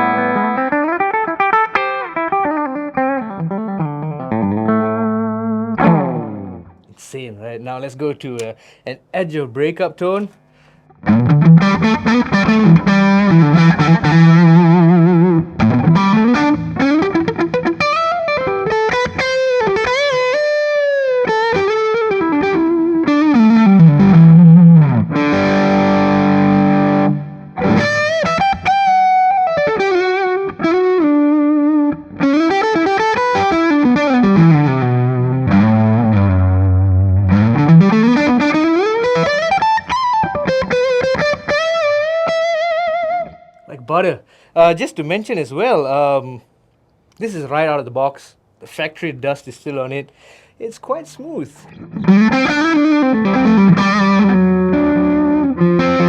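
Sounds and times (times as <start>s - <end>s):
electric guitar lead lines: 0.0s - 6.8s, 10.4s - 43.7s, 51.6s - 56.0s.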